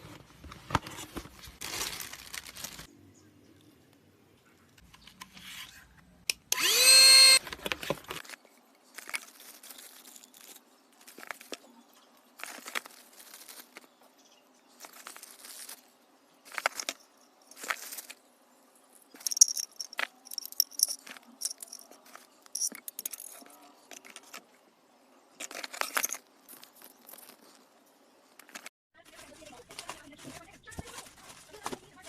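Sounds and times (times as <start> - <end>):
rustling and clattering handling: 0.0 - 2.9, 7.4 - 11.8, 12.4 - 14.0, 14.8 - 18.2, 19.0 - 24.6, 25.4 - 27.8, 28.4 - 32.0.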